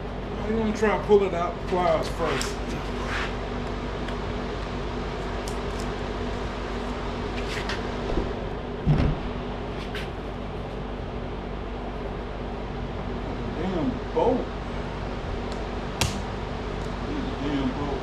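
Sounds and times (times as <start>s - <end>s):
steady hum: 0.0s - 18.0s
heavy thump: 8.1s - 9.3s.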